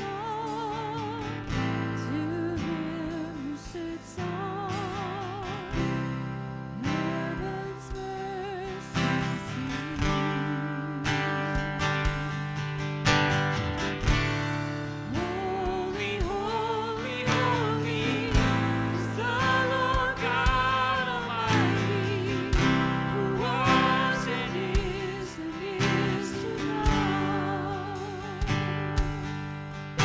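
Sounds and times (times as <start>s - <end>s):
singer with vibrato: 0.0s - 5.9s, 6.8s - 11.8s, 14.9s - 29.3s
strummed acoustic guitar: 0.0s - 30.0s
band with steady beat: 11.6s - 30.0s.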